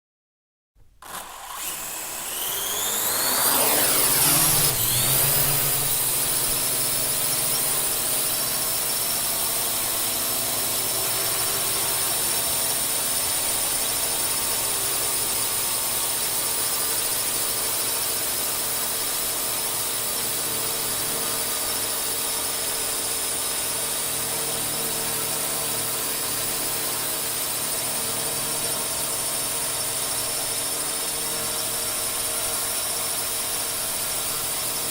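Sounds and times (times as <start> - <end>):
drone propellers buzzing: 1.0 - 13.1.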